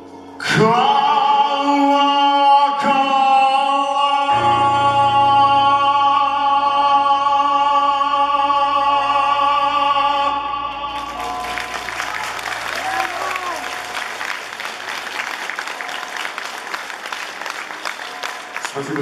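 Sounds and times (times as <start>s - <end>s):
man singing a long note: 0.4s - 13.8s
deep bass: 4.3s - 14.1s
backing music: 4.3s - 19.0s.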